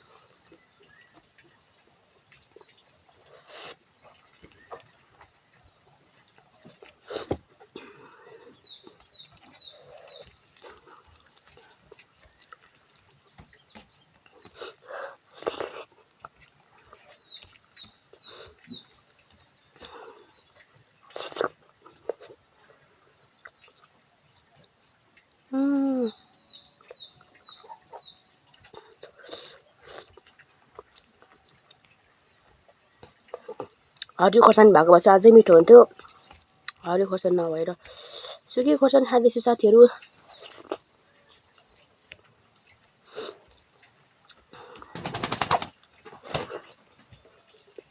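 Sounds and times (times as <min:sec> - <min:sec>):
bird chirping: 0:00.0 - 0:07.1, 0:07.8 - 0:30.2, 0:30.8 - 0:47.9
person chewing and smacking: 0:00.1 - 0:25.9, 0:26.8 - 0:34.2, 0:35.9 - 0:36.9, 0:40.0 - 0:44.9, 0:45.8 - 0:47.9
bird chirps: 0:07.8 - 0:11.7, 0:15.8 - 0:21.9, 0:25.5 - 0:30.1, 0:36.2 - 0:41.8.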